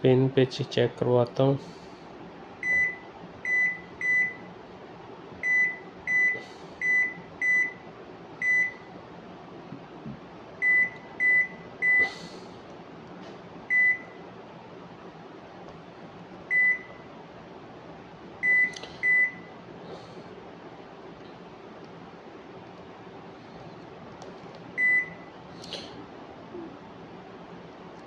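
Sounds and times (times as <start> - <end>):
washing machine button beeps: 2.6 - 4.5, 5.4 - 7.8, 8.4 - 8.9, 10.6 - 12.1, 13.7 - 14.2, 16.5 - 17.0, 18.4 - 19.5, 24.8 - 25.3.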